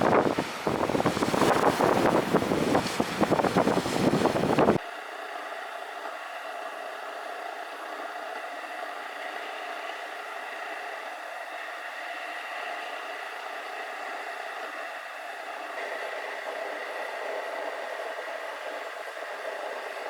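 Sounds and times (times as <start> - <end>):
wind buffeting microphone: 0.0 - 4.8
steady hiss: 0.0 - 20.0.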